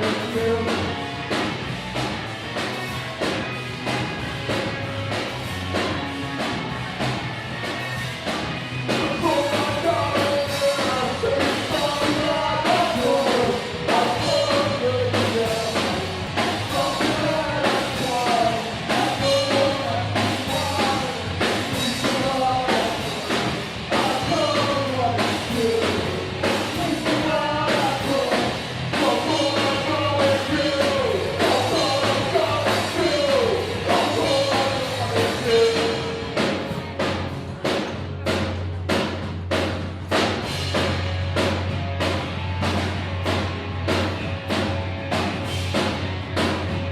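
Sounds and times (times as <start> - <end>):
person singing: 0.0 - 1.0, 9.0 - 36.4
drum kit beat: 0.0 - 46.9.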